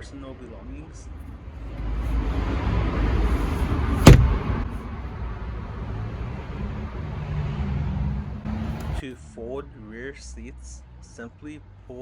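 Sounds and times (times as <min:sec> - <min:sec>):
panel slamming shut: 0:04.0 - 0:04.5.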